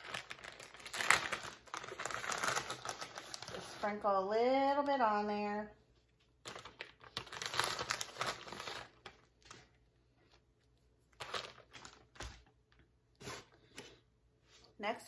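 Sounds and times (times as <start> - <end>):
plastic bag crinkling: 0.0 - 4.1, 6.4 - 10.4, 11.1 - 12.9.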